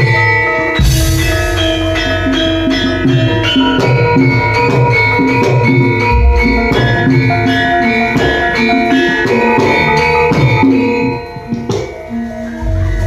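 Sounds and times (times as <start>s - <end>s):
metallophones and gong-chimes: 0.0s - 13.0s
hand drum strokes: 0.8s - 13.0s
deep low boom: 6.1s - 8.6s.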